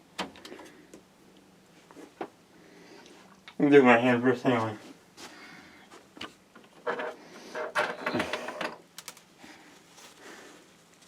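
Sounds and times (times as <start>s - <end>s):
cables and parts rustling: 4.4s - 11.0s.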